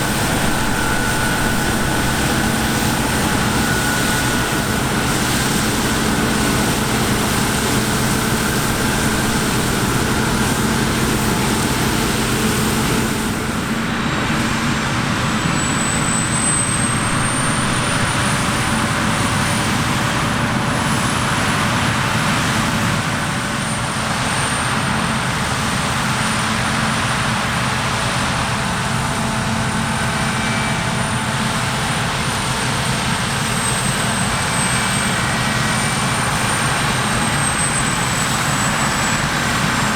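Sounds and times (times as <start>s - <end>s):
thin high whine: 0.0s - 20.5s
diesel engine drone: 0.0s - 39.9s.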